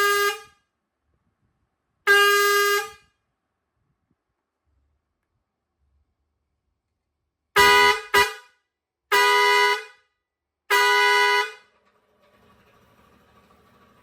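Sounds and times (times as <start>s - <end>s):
air horn blasts: 0.0s - 0.6s, 2.1s - 3.1s, 7.6s - 10.1s, 10.7s - 11.8s.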